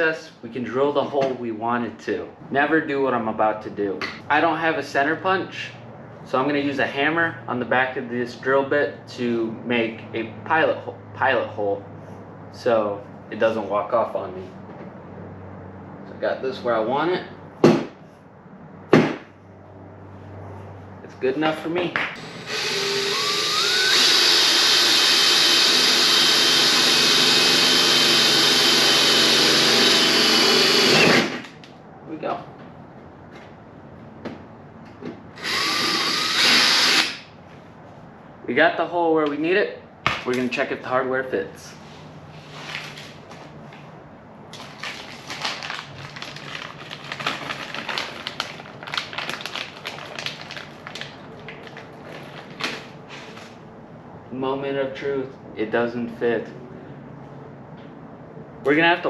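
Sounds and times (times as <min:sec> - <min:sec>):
electric drill drilling sheet metal: 0:22.2 - 0:31.4, 0:35.4 - 0:37.2.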